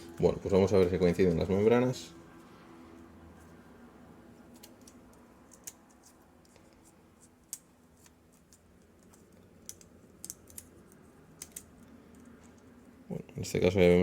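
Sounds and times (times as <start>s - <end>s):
light clicks of small parts: 7.5s - 12.7s.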